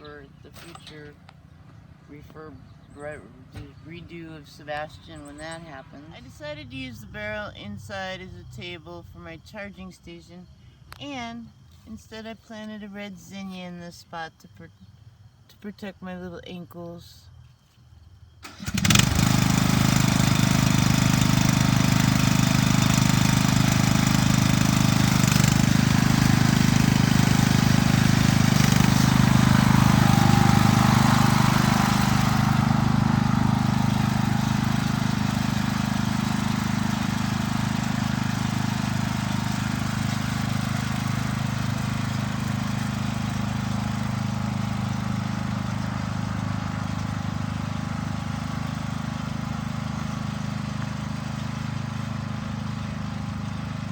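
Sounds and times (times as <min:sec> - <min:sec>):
small lawn mower engine running: 0:00.0 - 0:06.2, 0:18.4 - 0:53.9.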